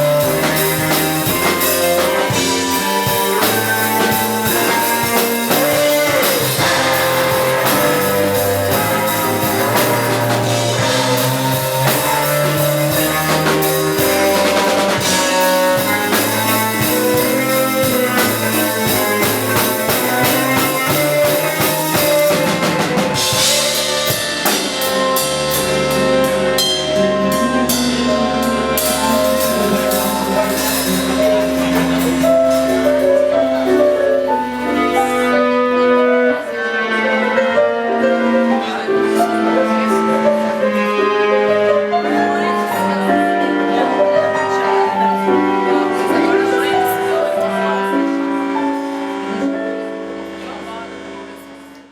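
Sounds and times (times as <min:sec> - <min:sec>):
cymbals: 0:00.0 - 0:51.9
instrumental rock jazz band: 0:00.0 - 0:51.9.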